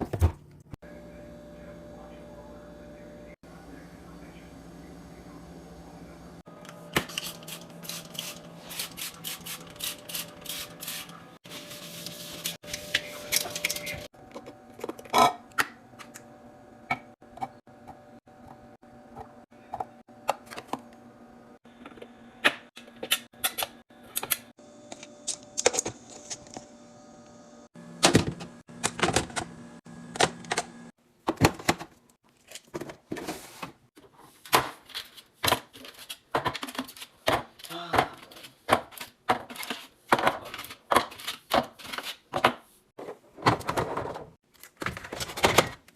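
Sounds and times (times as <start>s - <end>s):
food containers being handled: 31.2s - 45.9s.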